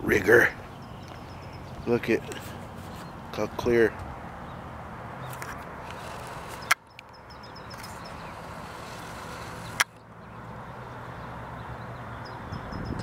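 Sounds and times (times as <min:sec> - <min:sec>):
outdoor background noise: 0:00.0 - 0:13.0
sharp click: 0:05.3 - 0:08.2.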